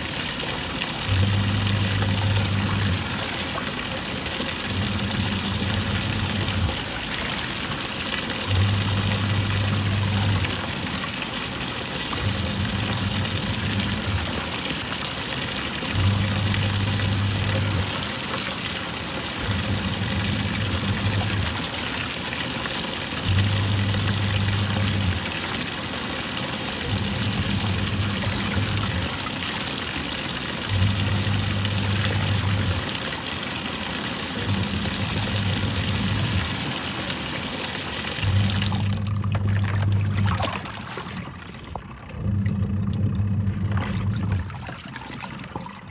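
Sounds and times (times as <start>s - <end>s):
washing machine motor humming: 0.0s - 45.9s
water sloshing: 30.6s - 45.9s.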